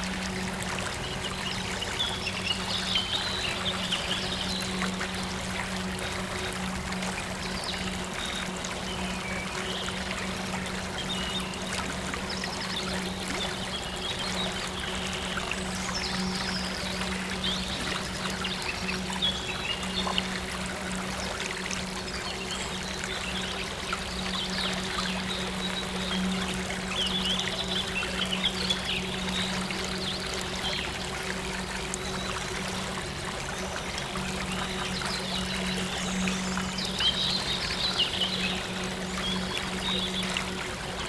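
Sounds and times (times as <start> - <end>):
low steady hum: 0.0 - 41.0
water trickling and pouring: 0.0 - 41.0.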